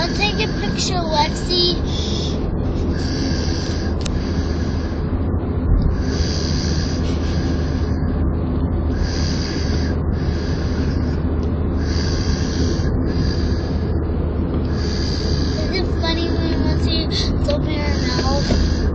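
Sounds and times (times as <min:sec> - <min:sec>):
person snoring: 0:00.0 - 0:05.0, 0:11.8 - 0:13.8, 0:14.7 - 0:18.9
vehicle rumbling: 0:00.0 - 0:18.9.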